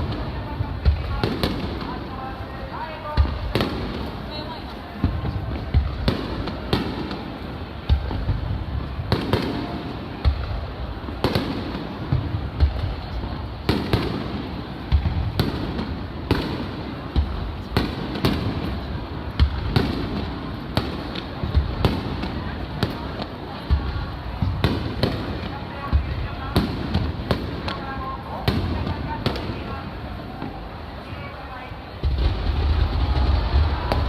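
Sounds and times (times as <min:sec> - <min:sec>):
fireworks booming with echo: 0:00.0 - 0:34.0.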